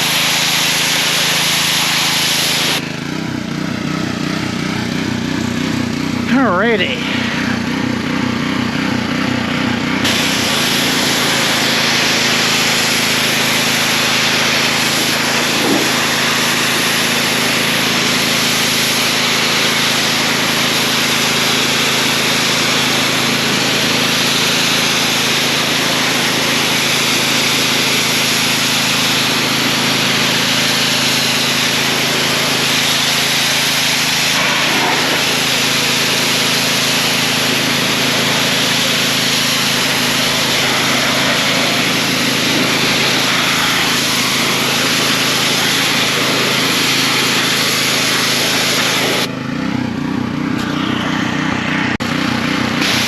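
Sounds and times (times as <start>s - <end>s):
water jet hissing against wall: 0.0s - 2.8s, 10.1s - 49.3s
pressure washer engine running: 0.0s - 53.0s.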